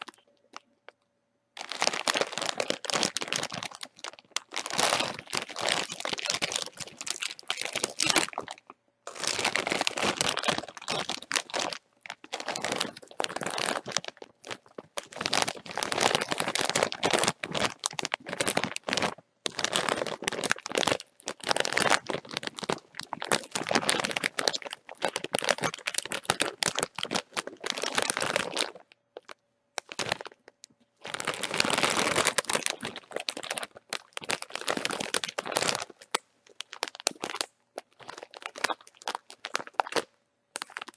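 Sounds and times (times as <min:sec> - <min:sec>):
chip bag crinkling: 0:00.0 - 0:00.7, 0:01.6 - 0:30.4, 0:31.0 - 0:40.9.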